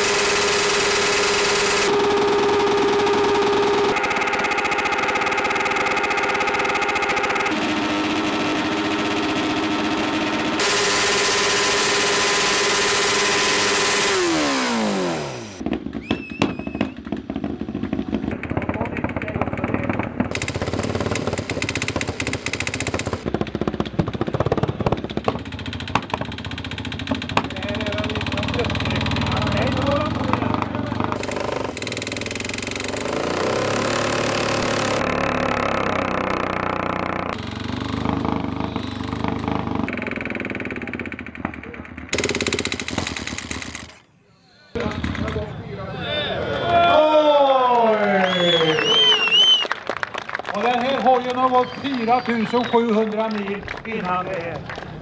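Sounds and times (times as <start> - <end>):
motorcycle engine revving high: 0.0 - 43.9.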